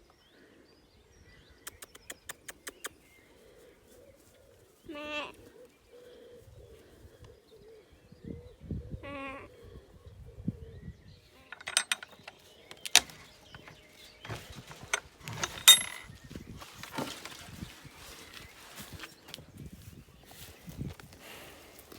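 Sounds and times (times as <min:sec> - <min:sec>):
farm animal bleating: 0:04.8 - 0:05.5, 0:09.0 - 0:09.6
sharp knocks and clatters: 0:11.5 - 0:16.2.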